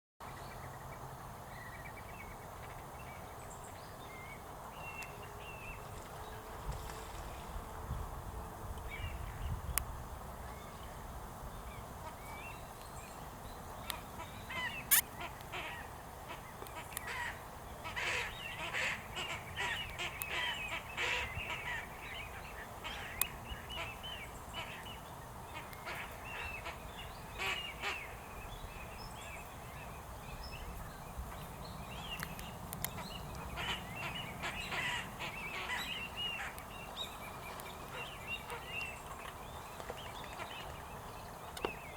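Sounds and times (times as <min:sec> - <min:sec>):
wild ducks calling: 0:13.8 - 0:28.3, 0:31.9 - 0:41.6.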